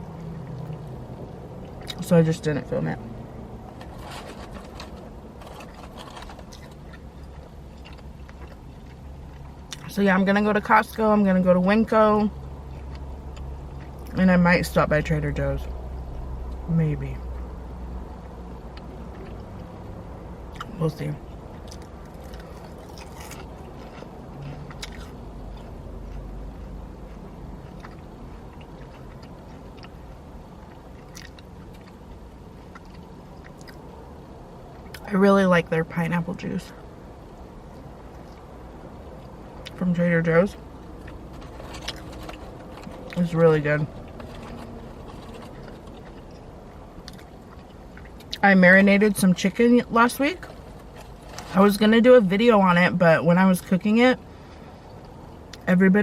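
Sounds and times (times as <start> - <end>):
chewing food: 0.0 - 2.1, 3.7 - 9.9, 21.5 - 35.0, 40.5 - 48.4
car interior hum: 0.0 - 56.0
person eating: 21.6 - 33.8.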